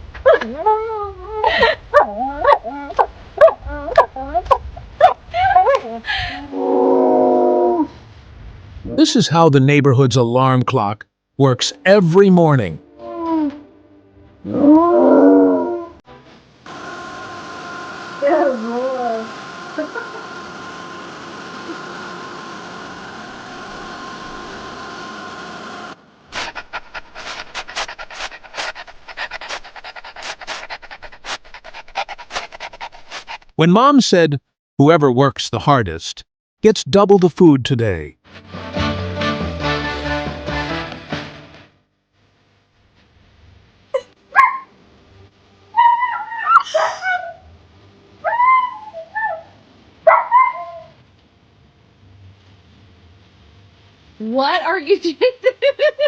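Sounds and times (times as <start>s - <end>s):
mechanical hum: 0.0s - 10.6s, 11.4s - 33.4s, 41.4s - 56.0s
dog whining and yelping: 0.2s - 6.0s, 44.4s - 44.7s, 45.8s - 47.5s, 48.2s - 50.9s
dog panting: 26.4s - 33.5s.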